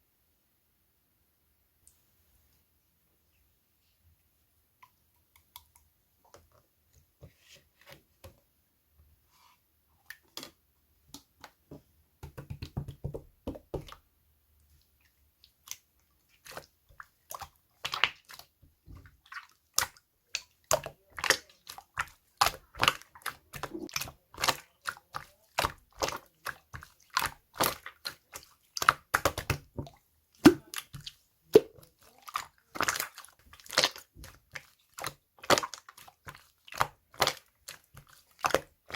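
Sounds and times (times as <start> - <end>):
slime squished by hand: 30.4 - 38.9.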